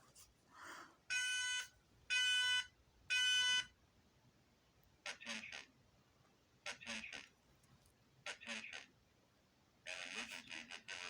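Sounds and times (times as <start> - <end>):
fire alarm electronic tones: 1.1 - 3.7.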